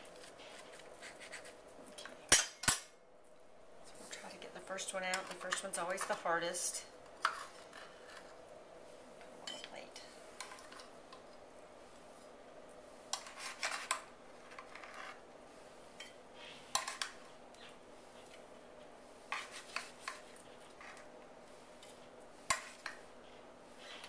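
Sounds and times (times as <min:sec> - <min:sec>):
utensil scraping a baking pan: 0:04.0 - 0:08.4, 0:13.0 - 0:18.4, 0:19.0 - 0:24.0.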